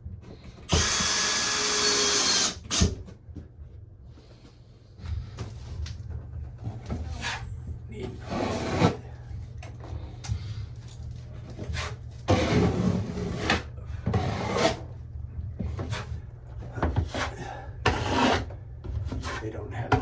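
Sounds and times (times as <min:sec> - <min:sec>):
steady low hum: 0:02.6 - 0:20.0
hand tool scraping drywall: 0:08.1 - 0:09.2, 0:11.5 - 0:14.9, 0:15.7 - 0:20.0.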